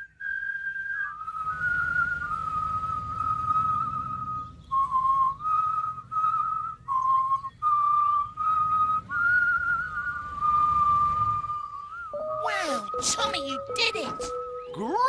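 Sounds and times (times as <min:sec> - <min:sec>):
person whistling a tune: 0:00.0 - 0:13.2.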